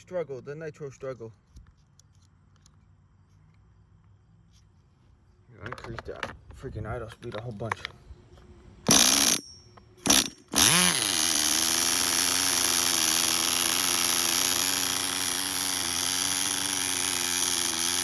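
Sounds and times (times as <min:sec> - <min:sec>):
nitro engine starting and idling: 0:10.0 - 0:18.0.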